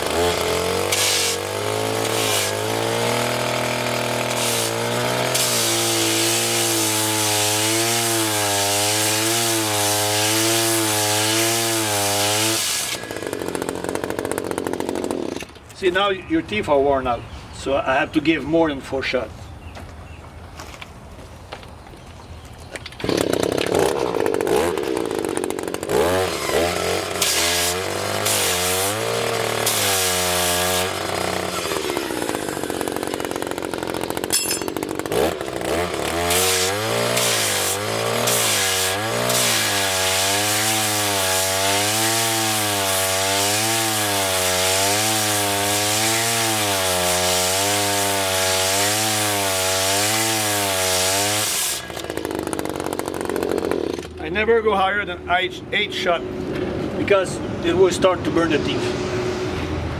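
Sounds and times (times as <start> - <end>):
powered sharpener grinding metal teeth: 0.0 - 15.6, 23.0 - 54.2.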